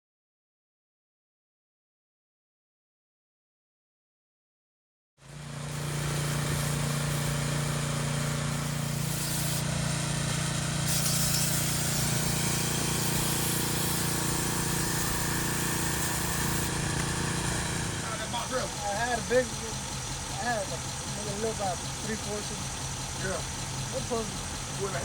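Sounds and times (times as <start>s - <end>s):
small engine running steadily: 5.2s - 25.0s
loud steady hiss: 5.7s - 9.7s, 10.8s - 18.4s.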